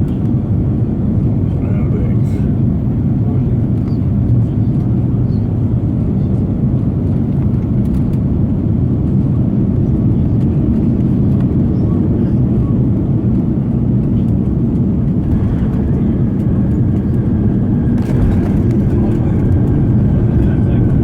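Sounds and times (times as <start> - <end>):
airplane cabin rumble: 0.0 - 21.0.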